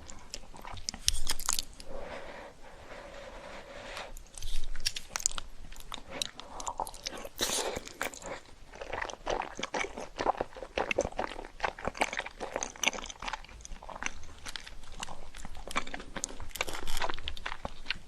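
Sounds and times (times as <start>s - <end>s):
crunchy food chewing: 0.0s - 2.0s, 4.1s - 18.0s.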